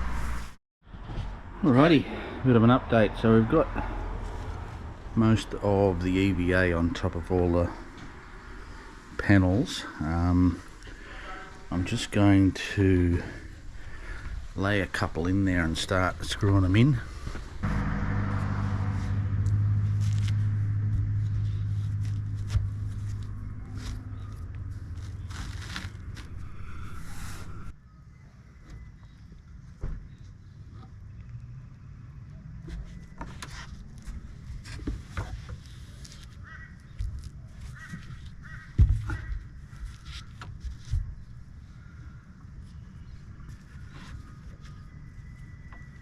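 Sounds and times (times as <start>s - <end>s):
loud thump: 17.6s - 24.8s.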